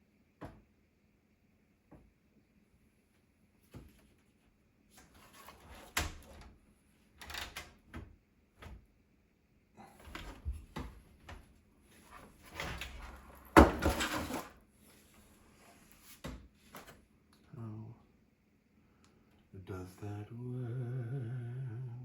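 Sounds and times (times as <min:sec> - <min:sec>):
knocks and scrapes of computer parts: 0:13.5 - 0:14.5.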